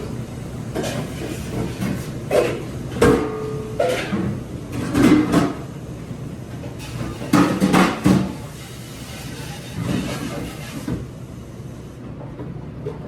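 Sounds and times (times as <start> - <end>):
dishes and metal pans clattering: 0.8 - 5.6, 6.8 - 8.4.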